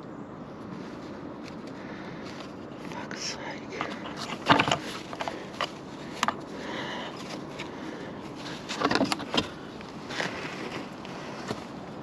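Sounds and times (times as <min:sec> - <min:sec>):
steady background hiss: 0:00.0 - 0:12.0
small parts clicking and rattling: 0:03.7 - 0:06.5.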